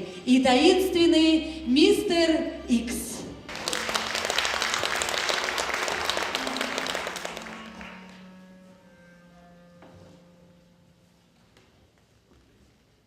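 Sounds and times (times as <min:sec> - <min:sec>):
audience applauding: 0:03.5 - 0:08.4.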